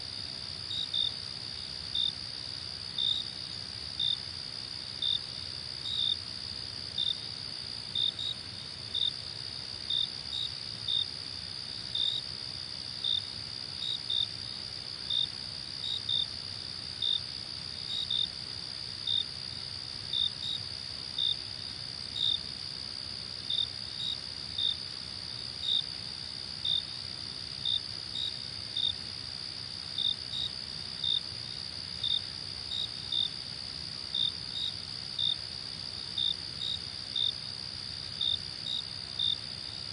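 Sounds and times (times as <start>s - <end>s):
cricket chirps: 0.0s - 39.9s
cricket trilling: 23.5s - 39.9s.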